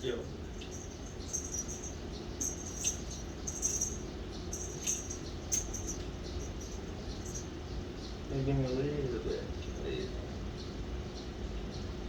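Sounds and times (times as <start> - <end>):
steady low hum: 0.0 - 12.0
cat toy rattling: 0.5 - 7.5.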